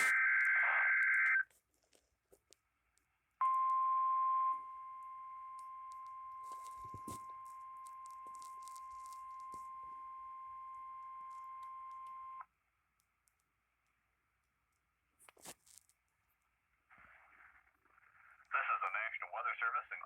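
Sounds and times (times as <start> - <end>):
digital data burst screech: 0.0 - 1.4
radio static crackles: 0.0 - 1.5, 6.0 - 9.8, 16.9 - 20.0.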